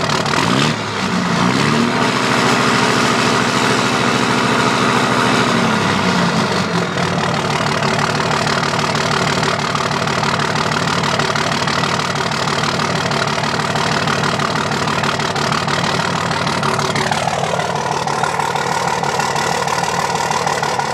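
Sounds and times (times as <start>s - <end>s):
diesel engine idling with misfire: 0.0s - 20.9s
high whine dropping in pitch: 16.7s - 20.8s.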